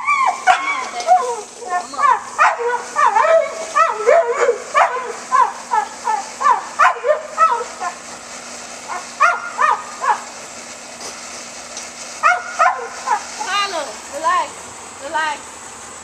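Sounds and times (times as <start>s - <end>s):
dog barking rapidly: 0.4s - 8.0s, 8.9s - 10.3s, 12.2s - 13.4s.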